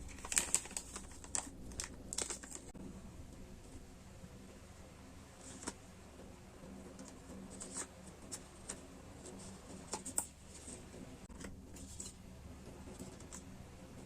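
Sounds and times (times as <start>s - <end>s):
stationery packaging taps and crinkles: 0.1s - 2.7s.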